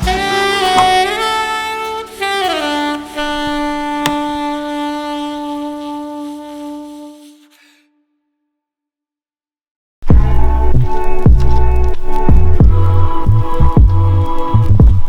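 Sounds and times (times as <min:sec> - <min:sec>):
saxophone music: 0:00.0 - 0:08.2.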